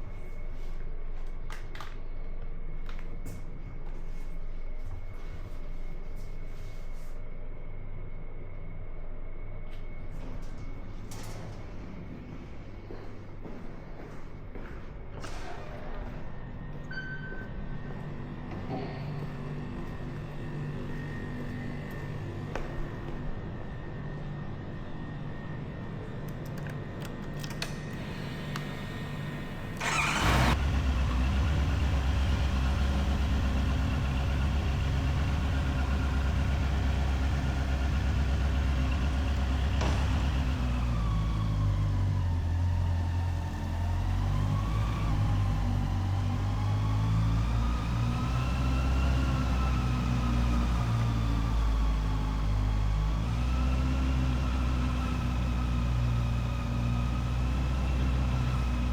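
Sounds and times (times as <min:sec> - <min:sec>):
engine revving: 0:28.0 - 0:58.9
motorcycle engine starting and idling: 0:28.0 - 0:58.9.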